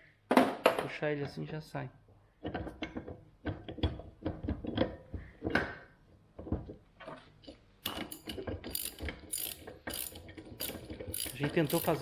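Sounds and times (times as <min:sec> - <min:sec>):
metal hand tools clattering: 0:07.8 - 0:12.0.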